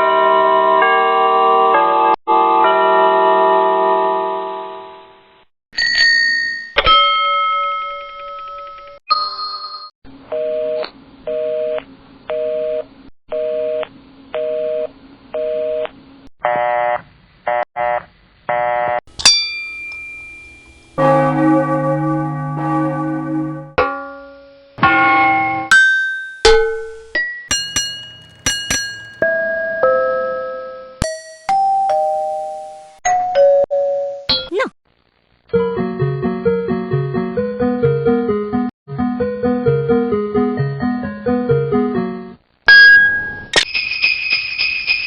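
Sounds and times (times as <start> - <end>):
wavering bell ring: 19.2 - 21.7, 27.5 - 29.2
bell ringing in bursts: 27.5 - 29.2
struck bell dings: 27.5 - 29.2.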